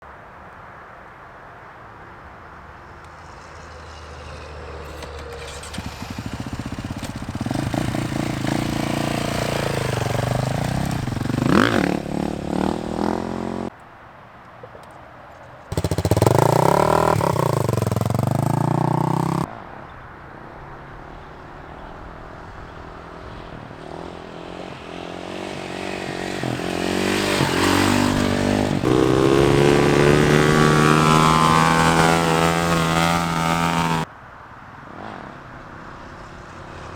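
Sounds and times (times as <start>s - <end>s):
dirt bike engines revving: 3.2s - 13.7s, 15.7s - 19.5s, 23.8s - 34.1s.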